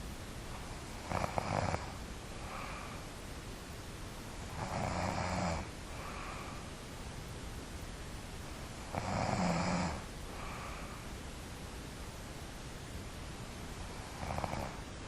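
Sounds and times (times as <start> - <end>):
soft breath: 0.5 - 3.4, 5.8 - 7.0, 9.9 - 11.5
person snoring: 8.9 - 10.8, 14.2 - 14.8.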